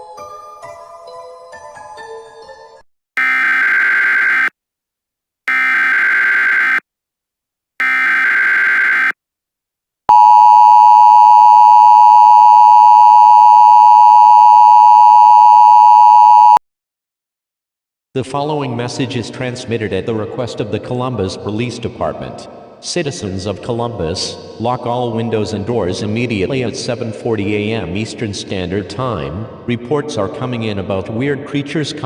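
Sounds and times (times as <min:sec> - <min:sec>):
data bursts: 0:03.2 - 0:04.5, 0:05.5 - 0:06.8, 0:07.8 - 0:09.2
two-tone attention signal: 0:03.2 - 0:04.5, 0:05.5 - 0:06.8, 0:07.8 - 0:09.2, 0:10.1 - 0:16.6.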